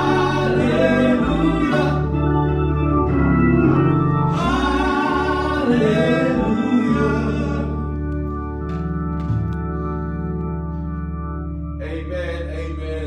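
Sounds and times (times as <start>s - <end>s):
voices singing gospel: 0.0s - 8.4s, 11.8s - 13.0s
bass: 0.0s - 13.0s
organ playing: 0.0s - 13.0s.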